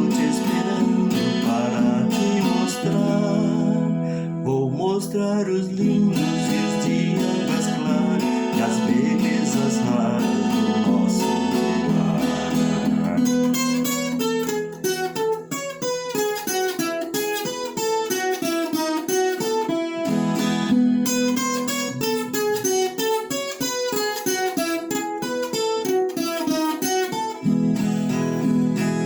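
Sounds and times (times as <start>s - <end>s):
guitar picking fast runs: 0.0s - 4.4s, 5.6s - 29.0s
low strummed chords: 0.0s - 16.7s.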